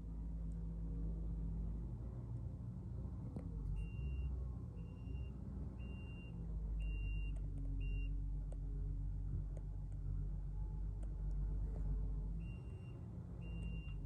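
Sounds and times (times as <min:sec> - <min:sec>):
engine rumbling: 0:00.0 - 0:14.0
vehicle reversing alarm beeping: 0:03.8 - 0:08.2, 0:12.3 - 0:14.0.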